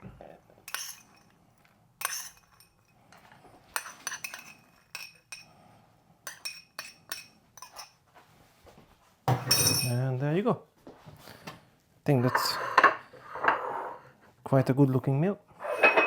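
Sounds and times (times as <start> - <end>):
metal utensil clinking on plate: 0.7 - 1.3, 2.0 - 3.0, 3.8 - 5.5, 6.3 - 8.0.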